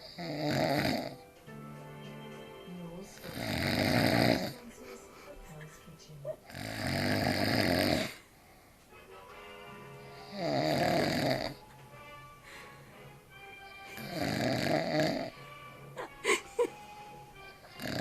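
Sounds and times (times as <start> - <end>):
man snoring heavily: 0.0 - 1.2, 3.2 - 4.6, 6.5 - 8.2, 10.0 - 11.6, 13.7 - 15.4, 17.6 - 18.0.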